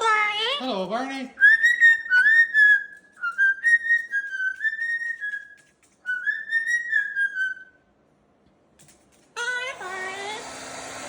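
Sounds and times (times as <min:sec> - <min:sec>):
melodic whistling: 0:01.4 - 0:07.9.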